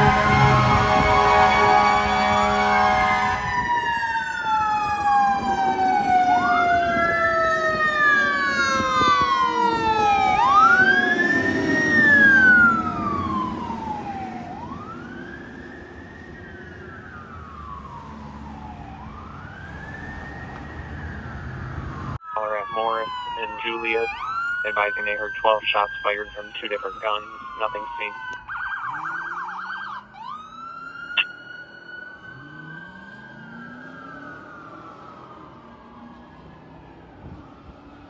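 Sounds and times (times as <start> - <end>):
fire engine siren wailing: 0.0 - 38.0
siren tone gliding down: 17.1 - 34.9.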